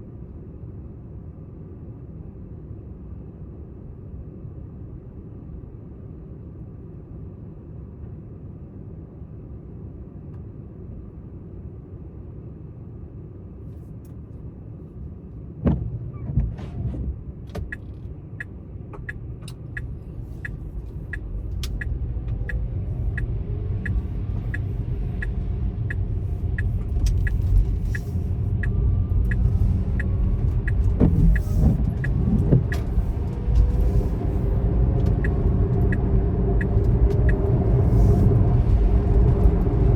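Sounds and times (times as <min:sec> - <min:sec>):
road rumble: 0:00.0 - 0:39.9
car engine running: 0:13.8 - 0:39.9
thump: 0:15.6 - 0:17.6
turn signal ticking: 0:17.5 - 0:39.8.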